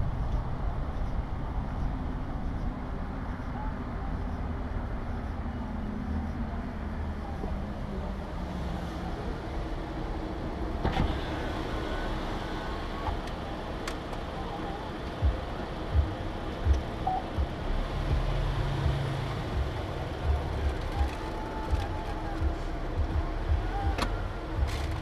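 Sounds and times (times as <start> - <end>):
car running noise: 0.0 - 25.0
short low thumps: 15.2 - 21.1.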